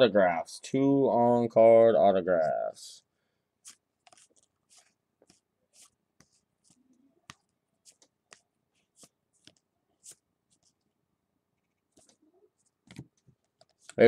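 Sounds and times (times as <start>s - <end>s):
trading cards flipped by hand: 3.6s - 10.8s, 11.9s - 12.2s.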